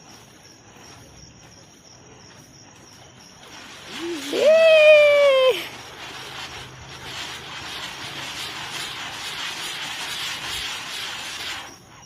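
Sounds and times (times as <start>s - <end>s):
hand-held firework fizzing: 2.7s - 12.0s.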